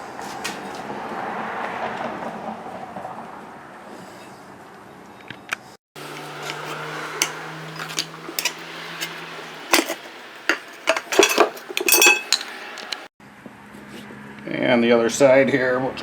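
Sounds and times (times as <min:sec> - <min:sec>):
metal clinks and knocks: 0:06.0 - 0:13.1.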